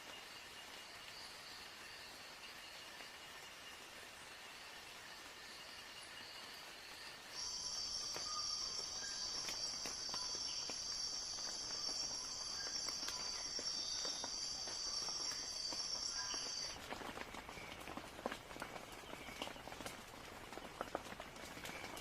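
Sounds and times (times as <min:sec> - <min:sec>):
light rain pattering: 0:00.0 - 0:22.0
high-pitched insect trill: 0:00.2 - 0:16.8.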